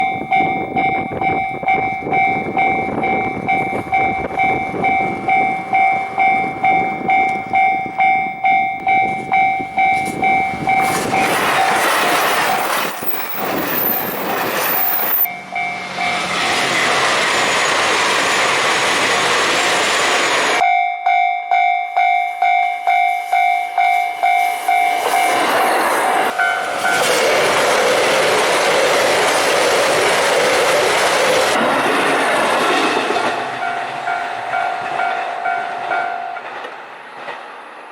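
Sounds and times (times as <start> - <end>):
level crossing warning bell: 0.0 - 18.6, 20.5 - 25.5, 26.2 - 27.1, 33.2 - 36.6
train wheels clattering on rails: 0.0 - 20.6, 22.9 - 37.9.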